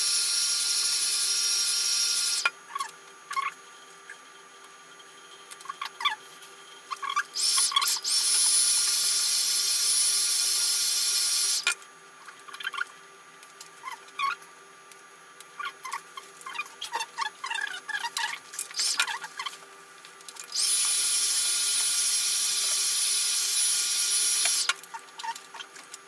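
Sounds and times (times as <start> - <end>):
hot-air blower hissing and whining: 0.0 - 2.5, 7.4 - 11.8, 20.5 - 24.8.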